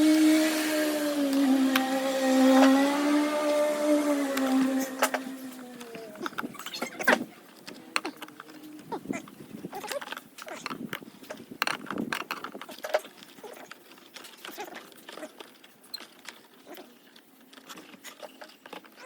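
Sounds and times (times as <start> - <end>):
short pitched sounds: 0.0 - 7.2
irregular clicks and light knocks: 4.3 - 19.0.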